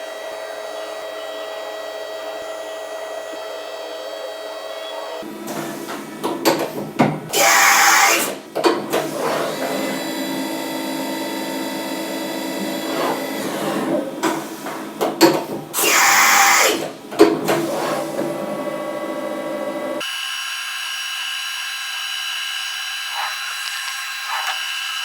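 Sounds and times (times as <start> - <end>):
milling machine motors whining: 17.8 - 25.0.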